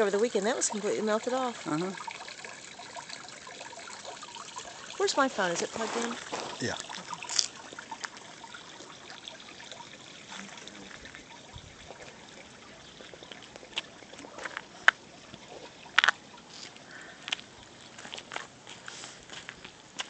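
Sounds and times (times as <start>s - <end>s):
sharp drip-like ticks: 0.0s - 20.0s
water trickling into water: 0.0s - 20.0s.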